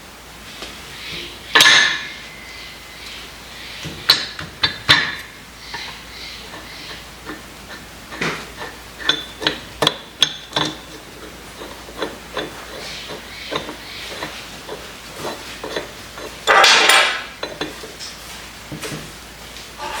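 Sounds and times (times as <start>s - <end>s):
metal clinks and knocks: 3.9s - 18.2s.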